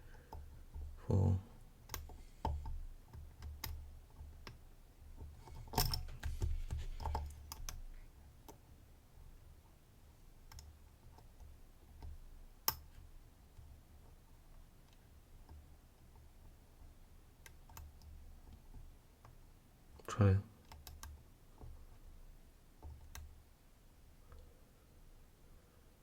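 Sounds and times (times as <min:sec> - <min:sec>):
lock picks clicking and scraping: 0:05.2 - 0:08.0.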